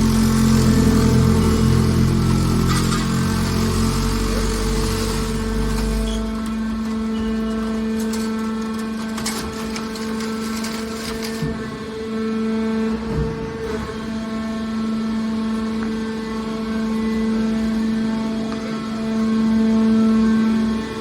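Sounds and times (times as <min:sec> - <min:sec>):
baler motor hum: 0:00.0 - 0:10.1.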